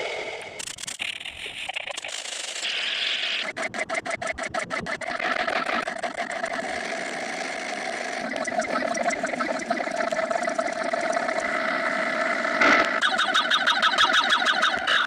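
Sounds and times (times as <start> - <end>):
machine-like whirring: 0.0 - 15.0
quick clicks: 0.4 - 6.7
fast rattle: 0.6 - 11.4.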